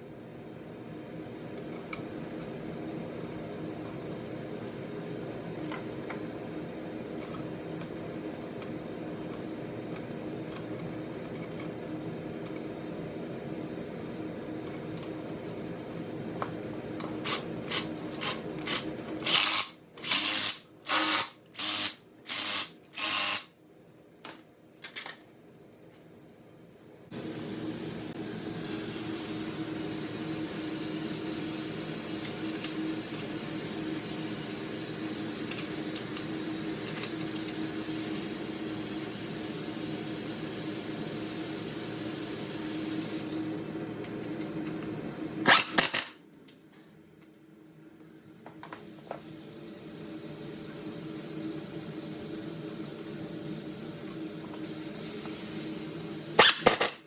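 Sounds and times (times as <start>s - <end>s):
workshop hum: 0.0s - 57.0s
power tool bursts: 19.3s - 23.5s.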